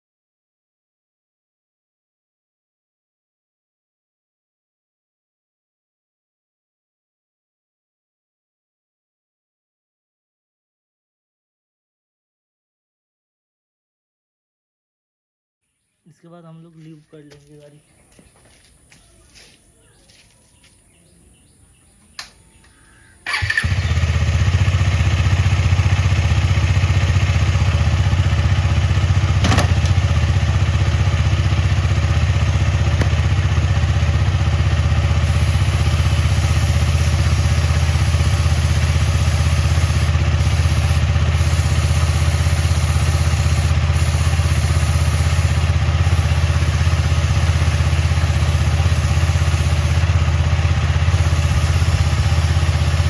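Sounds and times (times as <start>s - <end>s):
motorcycle engine starting and running: 17.3s - 53.0s
click: 22.1s - 22.8s.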